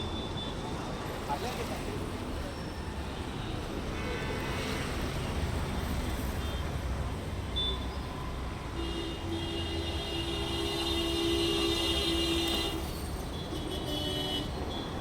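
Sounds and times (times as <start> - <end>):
street traffic rumbling: 0.0 - 15.0.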